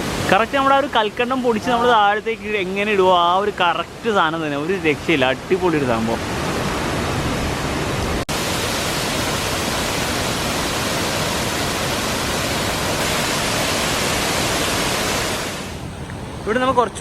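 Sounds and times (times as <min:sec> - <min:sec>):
waterfall rushing: 0:06.1 - 0:17.0.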